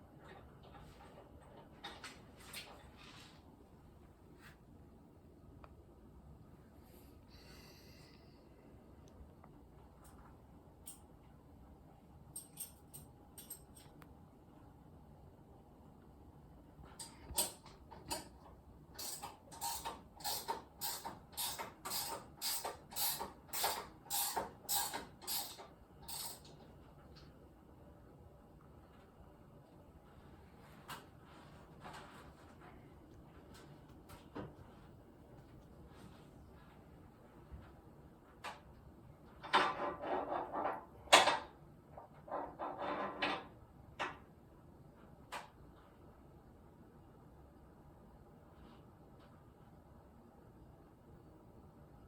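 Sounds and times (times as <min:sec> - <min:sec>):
metal parts rattling: 0:19.0 - 0:26.5.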